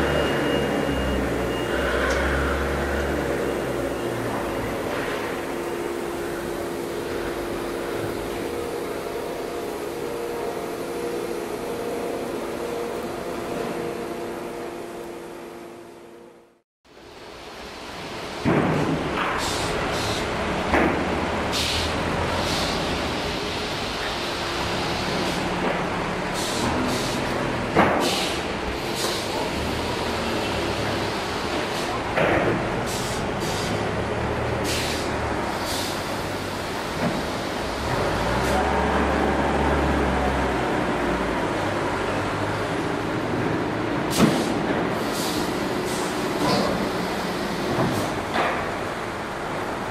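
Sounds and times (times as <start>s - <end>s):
machinery humming: 0.0s - 16.6s
factory machinery humming: 0.0s - 49.9s.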